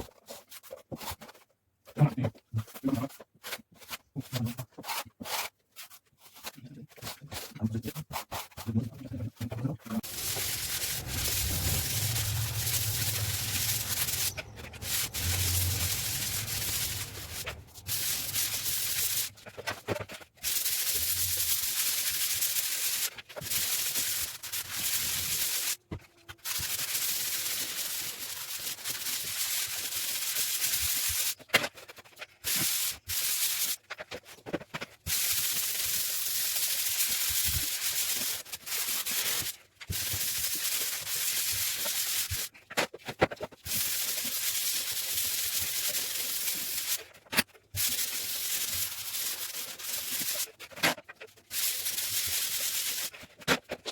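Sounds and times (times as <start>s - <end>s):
sanding scratchy hiss: 10.0s - 19.4s, 47.8s - 50.5s, 51.5s - 53.1s.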